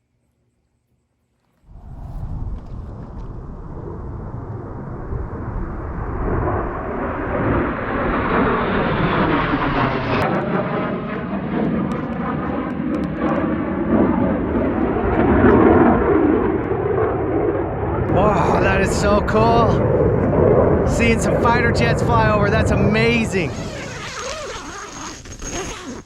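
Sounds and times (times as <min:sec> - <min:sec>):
fighter jets roaring overhead: 0:01.7 - 0:24.2.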